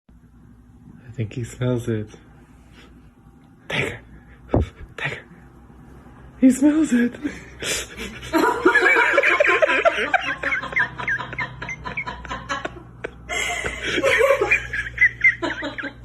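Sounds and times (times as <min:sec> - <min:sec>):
people laughing hard: 0:07.3 - 0:16.0.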